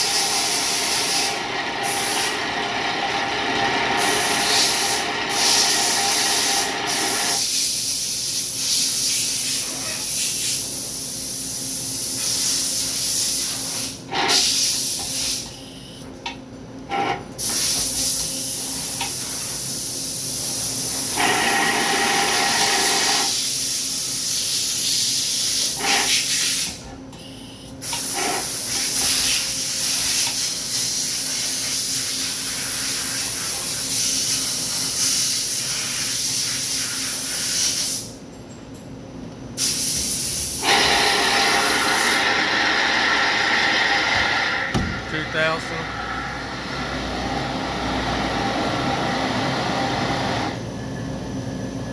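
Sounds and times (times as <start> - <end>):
coolant spraying hiss: 0.0 - 2.4, 4.0 - 15.5, 39.6 - 47.2
lathe machine hum: 0.1 - 6.9, 40.8 - 50.7.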